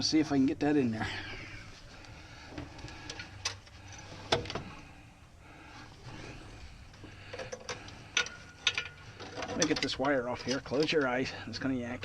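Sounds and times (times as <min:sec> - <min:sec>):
low steady hum: 0:00.0 - 0:12.0
light metallic clicks and knocks: 0:06.9 - 0:11.3.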